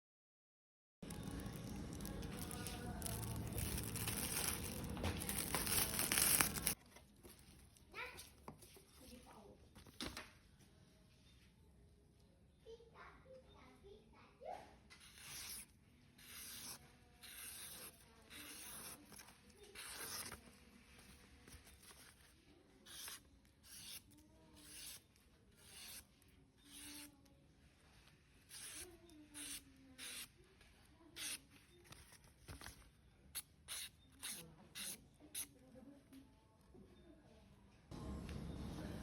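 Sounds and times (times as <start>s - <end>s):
knife blade rasping on sharpener: 15.0s - 19.0s, 25.6s - 27.1s, 28.5s - 28.8s, 29.4s - 30.3s, 33.7s - 35.5s.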